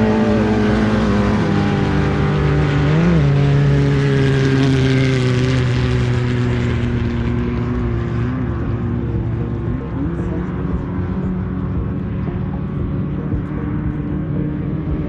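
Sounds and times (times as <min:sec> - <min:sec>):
race vehicle engine revving: 0:00.0 - 0:15.0.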